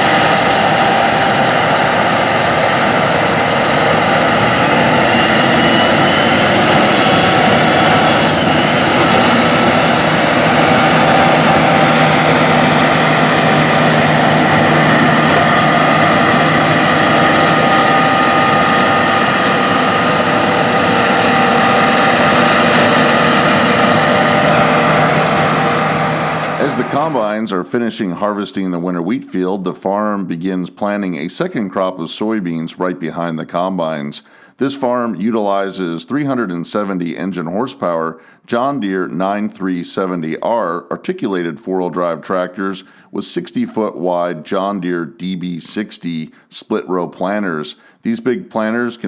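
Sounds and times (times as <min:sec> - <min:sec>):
steady machinery whine: 0:00.0 - 0:27.5
diesel engine drone: 0:00.0 - 0:27.7.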